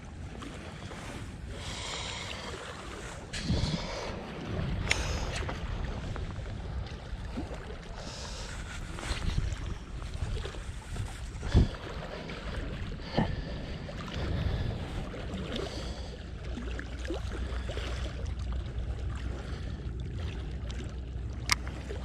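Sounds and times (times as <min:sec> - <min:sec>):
wind buffeting microphone: 0:00.0 - 0:16.1.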